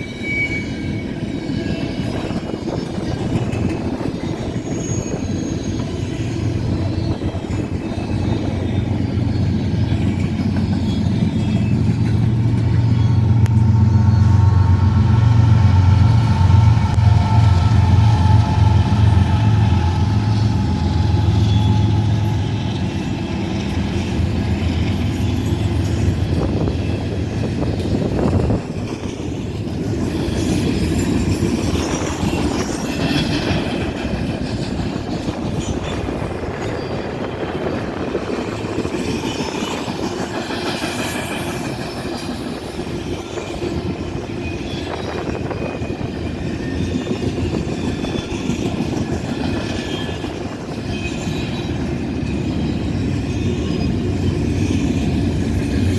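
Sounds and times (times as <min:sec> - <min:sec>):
high-pitched wheel squeal: 0:00.0 - 0:23.2
train wheels rumbling on rail: 0:00.0 - 0:55.9
wheels clickety-clack: 0:01.2 - 0:14.2, 0:18.0 - 0:55.9.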